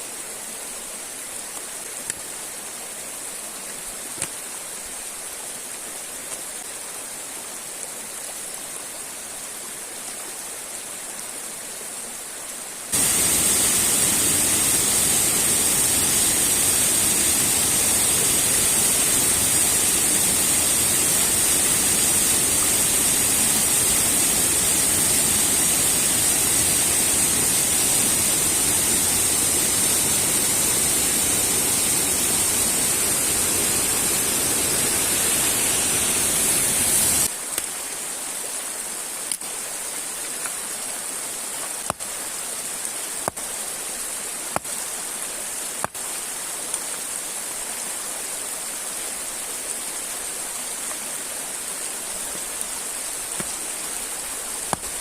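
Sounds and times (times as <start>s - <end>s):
river water flowing: 0.0s - 55.0s
waterfall rushing: 12.9s - 37.4s.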